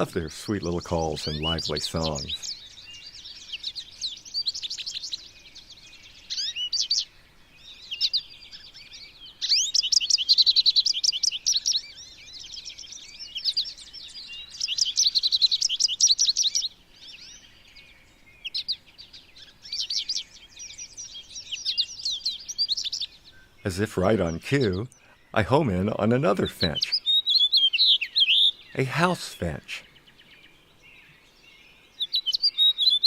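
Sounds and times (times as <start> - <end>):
finches twittering song: 0.0 - 33.0.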